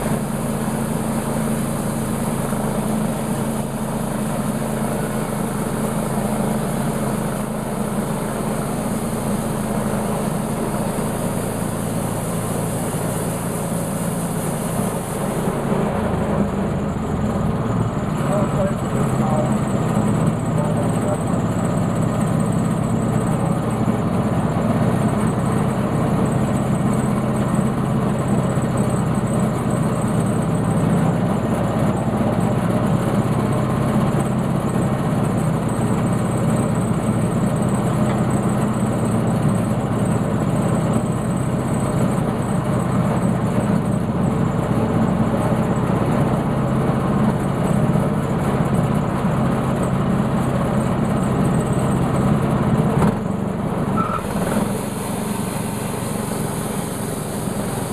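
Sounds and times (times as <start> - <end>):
sawmill engine running: 0.0 - 57.9.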